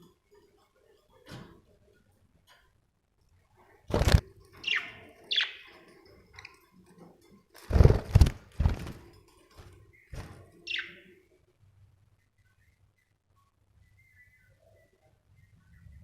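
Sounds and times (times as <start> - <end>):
sharp knocks and thumps: 3.9 - 4.3, 7.6 - 10.5
budgerigar chirping: 4.6 - 5.8, 10.7 - 11.1.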